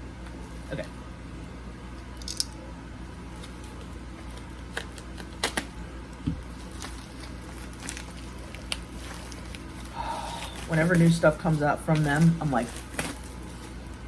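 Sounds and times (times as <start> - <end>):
package crinkling: 3.3 - 14.0.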